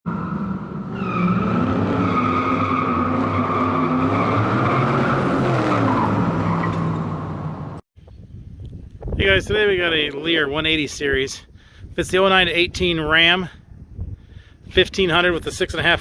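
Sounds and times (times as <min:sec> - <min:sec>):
car engine revving: 0:00.1 - 0:07.8.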